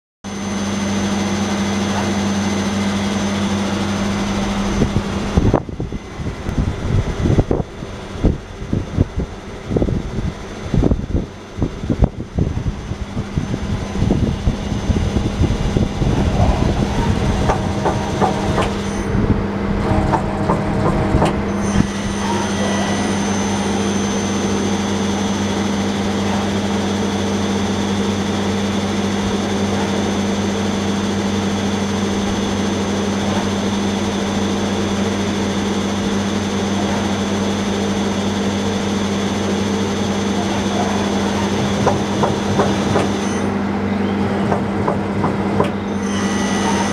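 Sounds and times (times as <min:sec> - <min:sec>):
machine hum: 0:00.3 - 0:46.9
knocks and clattering: 0:17.4 - 0:18.9, 0:19.8 - 0:21.5.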